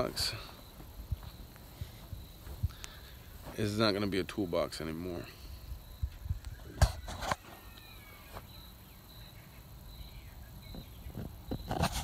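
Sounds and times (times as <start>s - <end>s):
small birds chirping: 0.0s - 12.0s.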